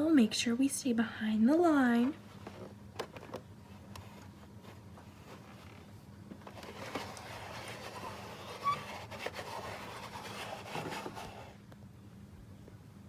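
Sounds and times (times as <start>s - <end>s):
plastic toys rubbing and clicking: 6.4s - 11.6s.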